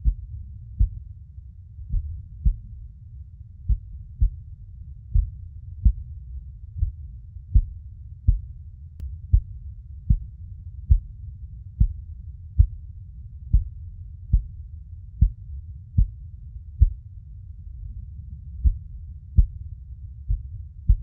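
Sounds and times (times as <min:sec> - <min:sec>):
heartbeat thumps: 0:00.0 - 0:01.1, 0:01.8 - 0:02.8, 0:03.6 - 0:04.5, 0:05.1 - 0:06.1, 0:06.7 - 0:08.6, 0:09.3 - 0:11.2, 0:11.8 - 0:12.8, 0:13.5 - 0:14.6, 0:15.2 - 0:16.2, 0:16.8 - 0:17.0, 0:18.5 - 0:21.0
steady low rumble: 0:00.0 - 0:21.0.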